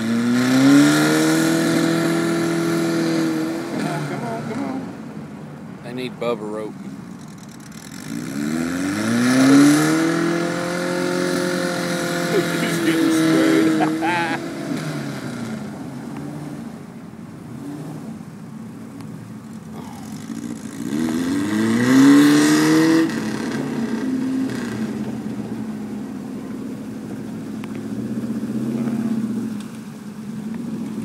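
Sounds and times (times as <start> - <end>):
off-road vehicle engine revving: 0.0 - 31.0
spinning wheels throwing mud: 7.1 - 9.7.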